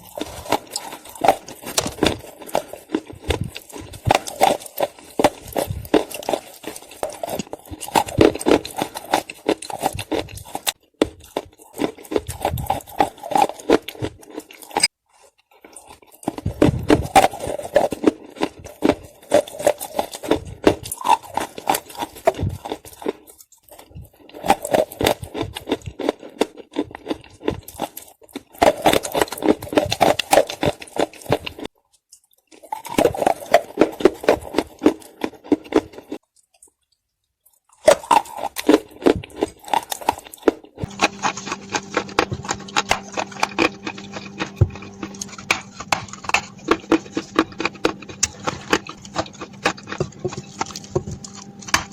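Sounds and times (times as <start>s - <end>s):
clay crunching being chewed: 0.0s - 51.9s
steady low hum: 40.8s - 51.9s.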